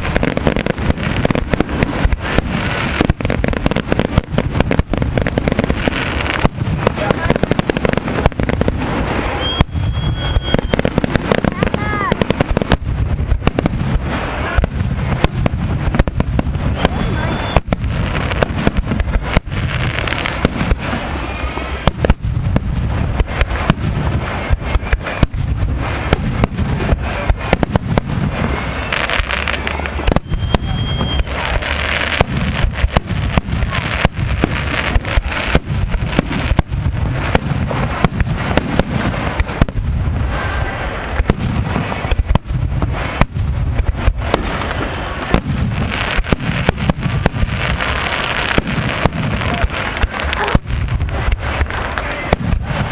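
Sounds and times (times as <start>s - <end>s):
firework bangs: 0.0s - 52.9s
firework crackle: 0.0s - 52.9s.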